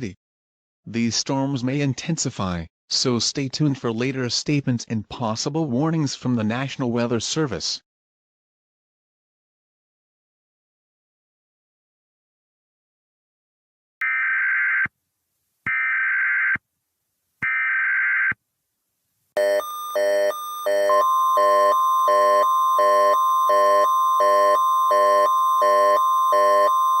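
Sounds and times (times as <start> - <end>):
pulsing electronic alarm tone: 19.4 - 27.0.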